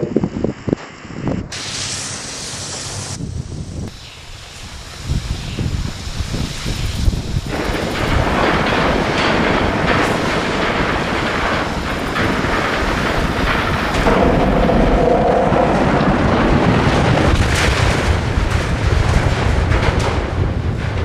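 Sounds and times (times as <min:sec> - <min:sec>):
heavy vehicle engine under load: 0:07.1 - 0:21.0.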